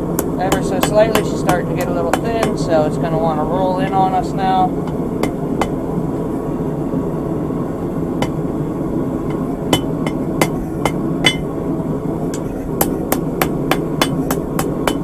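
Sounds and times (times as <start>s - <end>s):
steady background rush: 0.0s - 15.0s
hammer striking hot steel on anvil: 0.1s - 2.7s, 4.8s - 5.8s, 8.2s - 8.4s, 9.3s - 11.5s, 12.3s - 15.0s.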